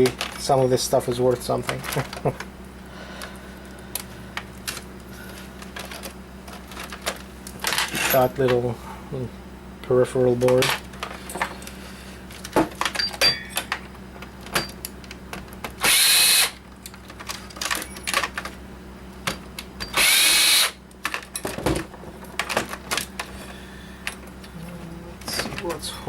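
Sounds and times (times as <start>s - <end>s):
parts being handled clicking: 3.2s - 8.6s, 16.7s - 18.6s
cordless power driver whirring: 15.8s - 16.6s, 19.9s - 20.8s.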